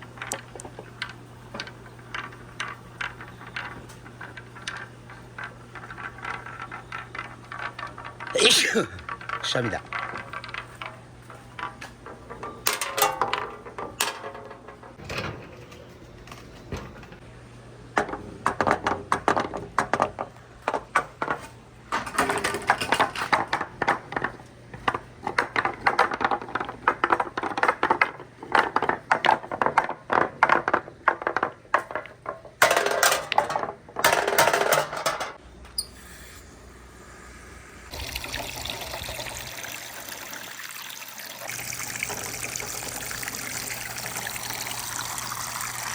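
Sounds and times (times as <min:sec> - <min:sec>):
marbles clattering on wooden run: 0:00.0 - 0:15.0, 0:22.0 - 0:35.3
water trickling: 0:37.9 - 0:45.9.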